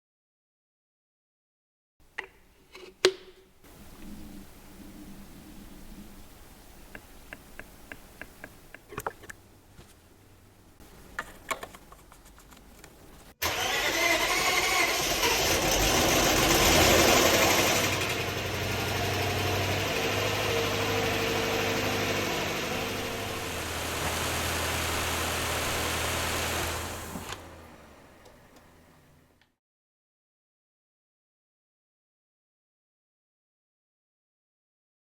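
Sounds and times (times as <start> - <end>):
car engine starting and idling: 13.4 - 29.4.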